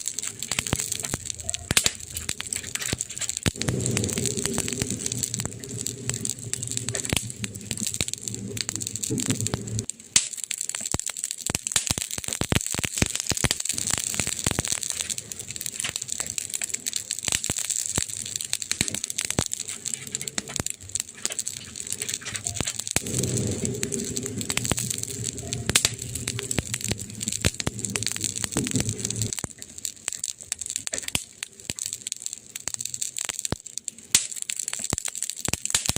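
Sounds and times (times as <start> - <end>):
burning wood crackling: 0.0 - 35.9
low rumble: 2.0 - 9.9, 19.4 - 29.5.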